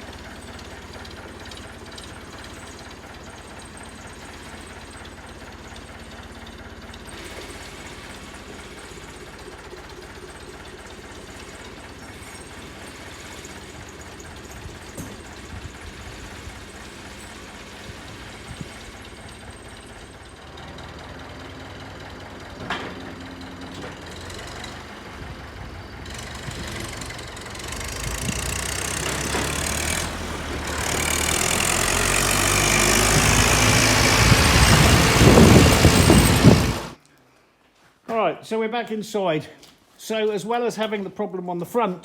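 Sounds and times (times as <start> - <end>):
tractor engine running: 0.0 - 37.0.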